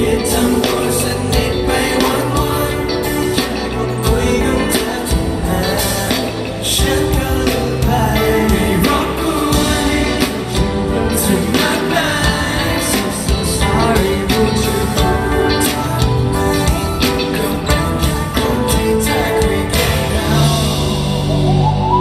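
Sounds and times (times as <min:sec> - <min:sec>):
live pop band with singing: 0:00.0 - 0:22.0.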